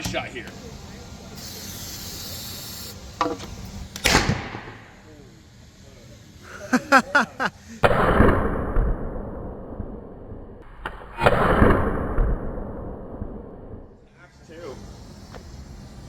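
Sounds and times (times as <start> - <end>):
potato cannon bang: 4.0 - 4.9.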